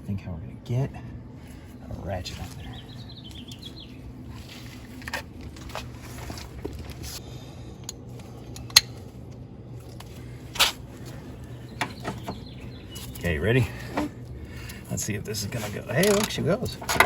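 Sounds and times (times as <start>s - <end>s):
faint steady hum: 0.0s - 17.0s
bird chirp: 1.6s - 4.8s, 11.1s - 14.8s.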